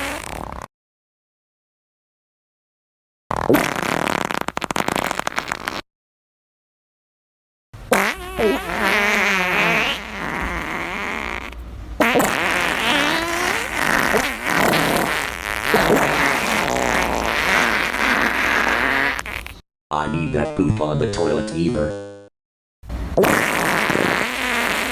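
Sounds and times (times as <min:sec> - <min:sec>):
fart sound effect: 0:00.0 - 0:00.7, 0:03.3 - 0:05.8, 0:07.9 - 0:19.6, 0:23.2 - 0:24.9.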